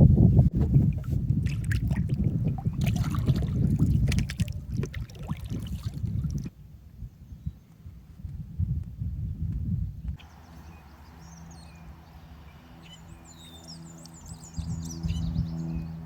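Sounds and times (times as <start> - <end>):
paddle splashing and dripping: 0.9 - 6.5.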